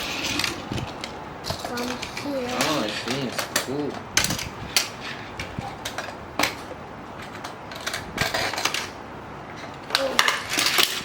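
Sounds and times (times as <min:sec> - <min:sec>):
toy cars clicking against plastic: 0:00.0 - 0:09.0, 0:09.9 - 0:11.0.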